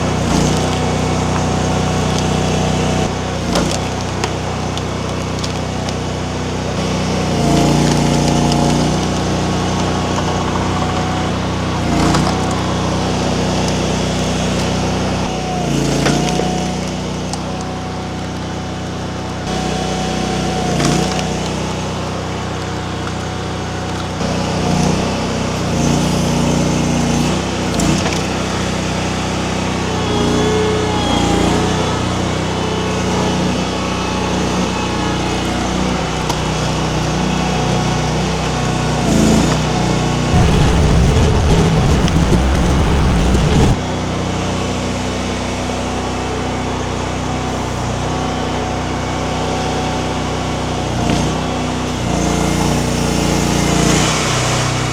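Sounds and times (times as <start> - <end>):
small engine running: 0.0 - 54.9
loud rough low rumble: 40.2 - 43.8.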